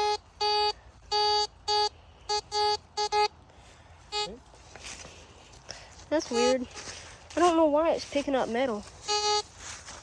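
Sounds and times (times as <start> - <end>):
metal detector beeping: 0.0 - 3.4, 4.1 - 4.4, 6.2 - 6.8, 8.8 - 10.0.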